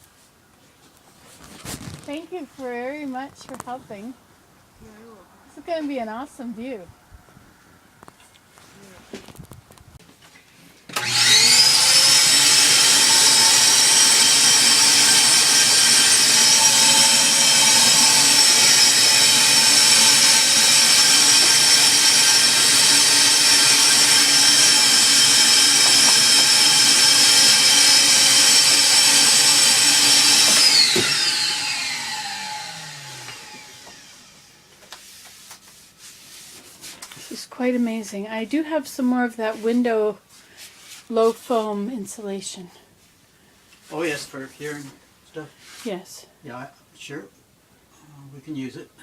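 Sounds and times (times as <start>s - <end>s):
power tool motor running: 10.9s - 34.7s.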